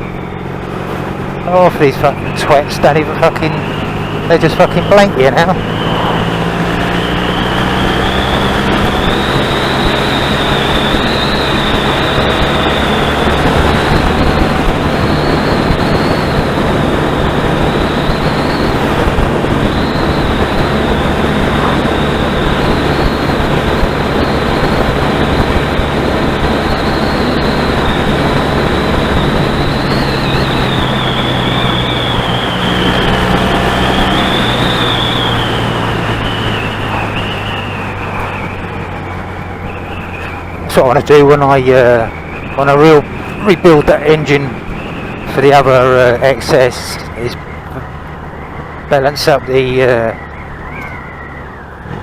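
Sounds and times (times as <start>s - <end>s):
motorcycle engine running: 0.0s - 52.0s
wind rush on microphone: 0.0s - 52.0s.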